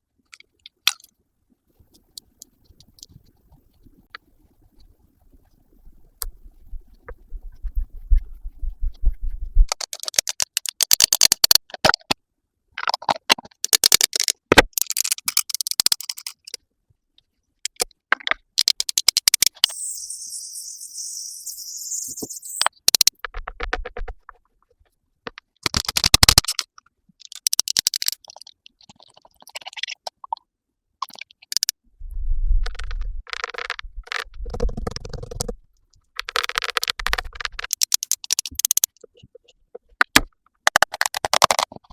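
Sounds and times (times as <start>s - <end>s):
scratchy brushing strokes: 4.6s - 9.7s
steady high hiss: 19.6s - 22.6s.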